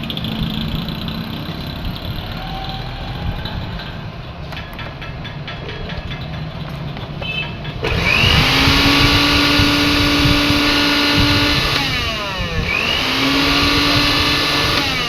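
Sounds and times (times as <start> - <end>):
electric juicer motor whining: 7.8 - 15.0.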